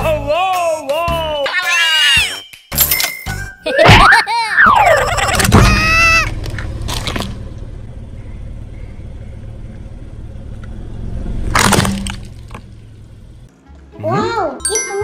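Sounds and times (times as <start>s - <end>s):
car engine rumbling: 4.7s - 13.5s.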